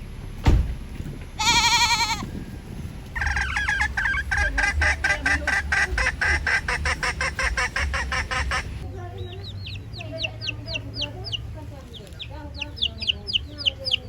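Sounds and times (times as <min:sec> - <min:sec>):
sharp thump: 0:00.4 - 0:01.3
farm animal bleating: 0:01.4 - 0:02.4, 0:03.2 - 0:06.1
poultry honking and cackling: 0:01.4 - 0:02.5, 0:03.1 - 0:14.0.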